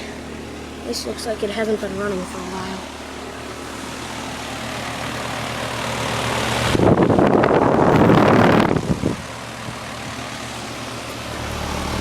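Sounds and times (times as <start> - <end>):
air conditioner humming: 0.0 - 12.0
wind buffeting microphone: 6.7 - 9.9.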